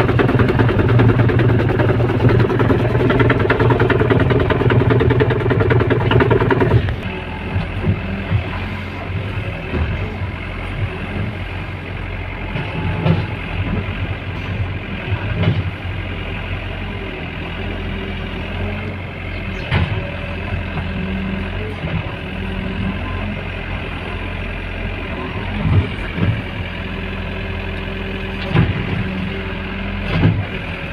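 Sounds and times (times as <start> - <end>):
heavy diesel engine running: 0.0 - 30.9
sharp knocks and clunks: 19.6 - 20.1, 30.1 - 30.5.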